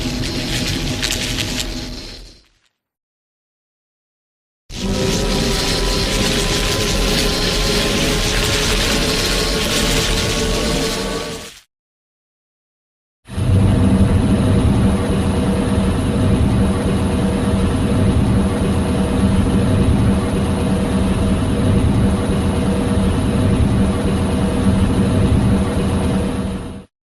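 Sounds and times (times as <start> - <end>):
loud mechanical rumble: 0.0 - 2.4, 4.7 - 11.5, 13.3 - 26.9.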